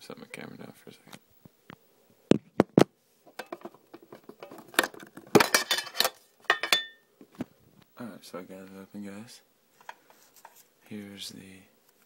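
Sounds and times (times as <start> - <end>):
box clattering and scraping: 3.3 - 6.2.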